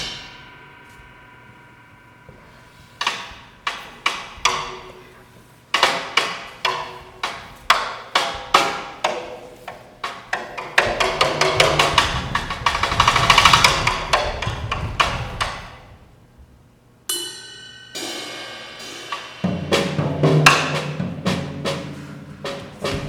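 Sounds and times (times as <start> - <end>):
drum and wood-block strikes: 5.8 - 15.5.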